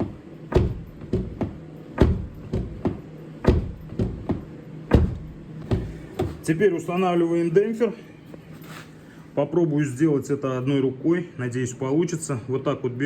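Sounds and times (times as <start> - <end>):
car door shutting thuds: 0.0 - 6.4.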